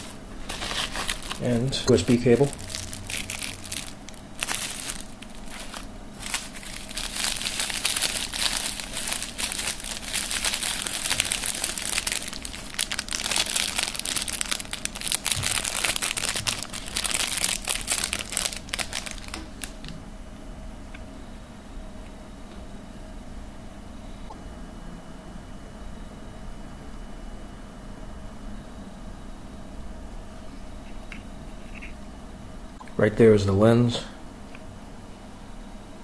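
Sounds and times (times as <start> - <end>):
packaging crinkling and rustling: 0.0 - 19.9.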